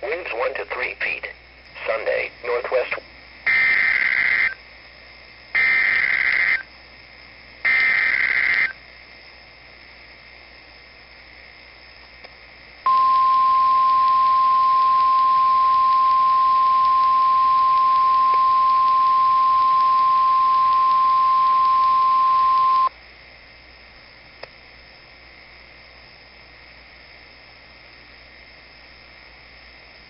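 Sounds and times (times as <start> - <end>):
radio static: 0.0 - 4.6, 5.6 - 6.6, 7.7 - 8.7
high-pitched alarm tone: 3.5 - 4.6, 5.6 - 6.6, 7.7 - 8.7, 12.9 - 22.9.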